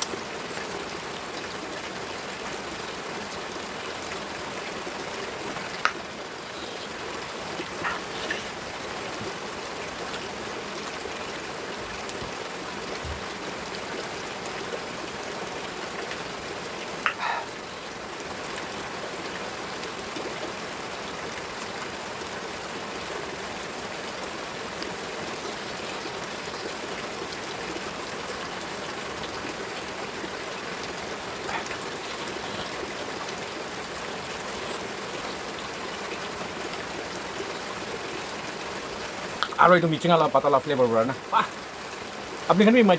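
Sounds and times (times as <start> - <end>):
steady hiss: 4.5 - 10.7, 23.0 - 42.9.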